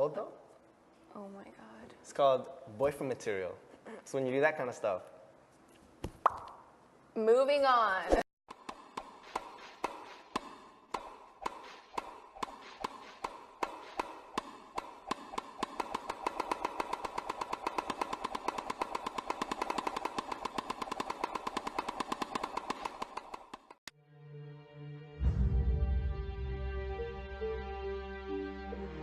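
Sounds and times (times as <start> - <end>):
sharp clicks speeding into rattle: 15.3 - 23.8.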